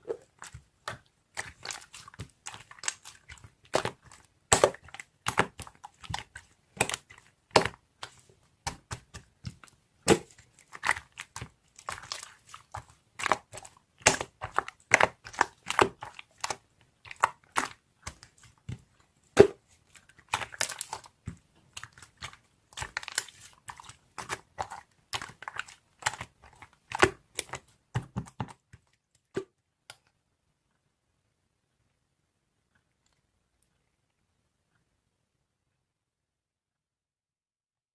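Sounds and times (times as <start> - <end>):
crinkling and crackling: 0.0 - 30.1.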